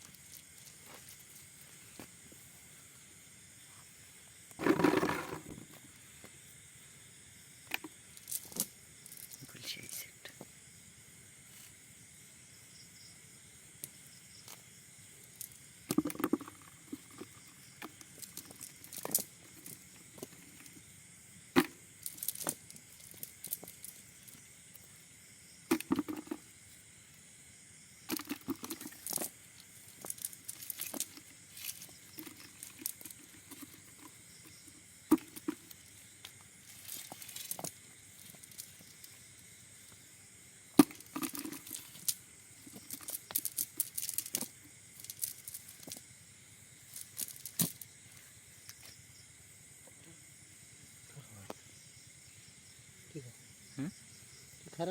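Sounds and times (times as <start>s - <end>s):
cast net being handled: 4.6s - 5.8s.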